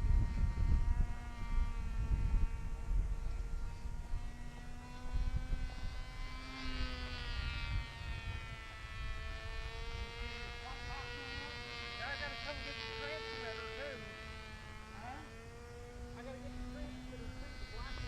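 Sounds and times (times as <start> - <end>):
small motor buzzing: 0.0 - 18.0
wind gusting on microphone: 0.0 - 18.0.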